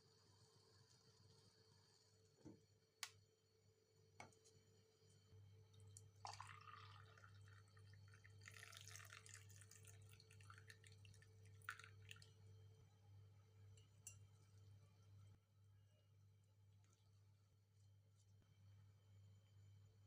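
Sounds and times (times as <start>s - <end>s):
low steady hum: 0.2s - 20.0s
liquid dripping and trickling: 5.7s - 12.5s.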